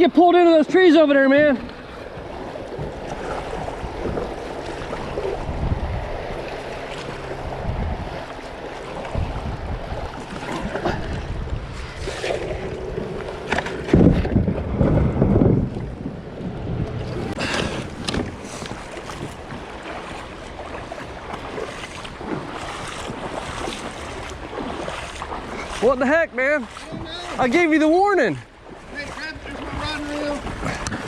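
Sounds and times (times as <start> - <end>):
water rushing: 0.0 - 31.0
wind buffeting microphone: 0.0 - 31.0
low rumbling knocks: 9.1 - 19.7.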